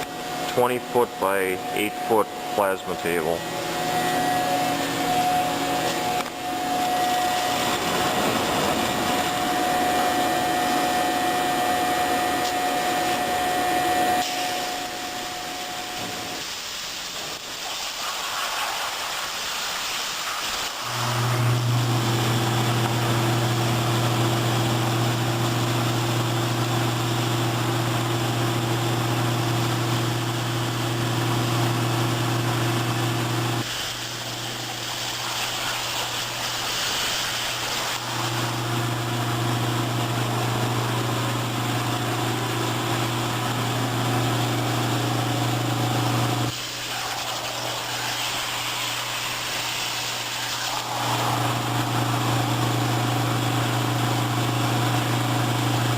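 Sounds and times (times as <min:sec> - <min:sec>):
plasma torch buzzing hum: 0:00.0 - 0:55.9
hiss of air: 0:16.2 - 0:20.9, 0:33.6 - 0:38.0, 0:46.5 - 0:51.4.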